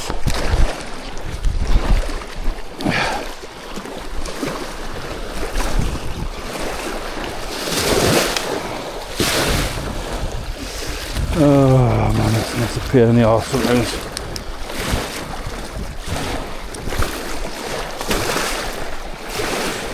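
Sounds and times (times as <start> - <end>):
wind buffeting microphone: 0.0 - 19.9.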